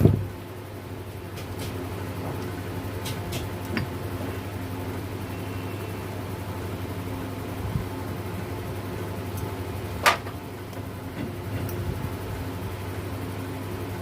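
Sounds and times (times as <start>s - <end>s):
steady background hum: 0.0s - 14.0s.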